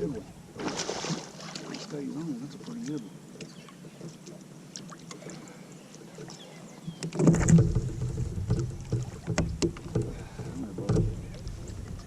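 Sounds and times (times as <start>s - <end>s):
low rumble against kayak hull: 6.2s - 12.0s
gear knocking on kayak hull: 7.1s - 11.7s.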